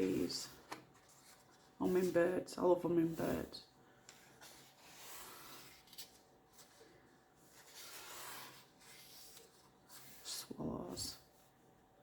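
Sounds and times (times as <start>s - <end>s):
paper pages rustling: 0.0s - 2.3s, 4.1s - 10.4s.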